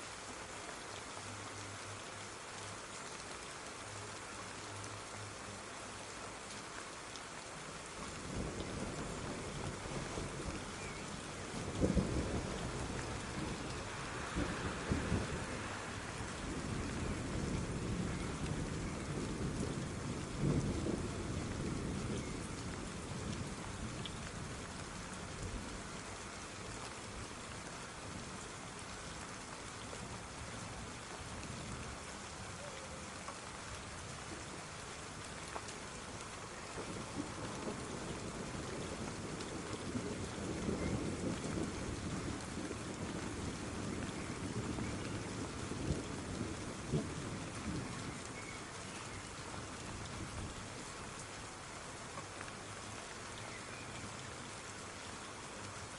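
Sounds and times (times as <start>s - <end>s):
steady rain falling: 0.0s - 55.9s
distant thunder rolls: 8.3s - 24.0s.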